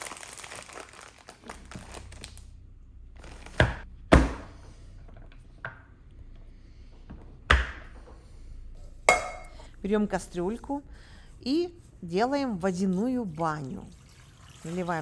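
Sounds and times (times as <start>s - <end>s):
packaging crinkling: 0.0s - 2.5s.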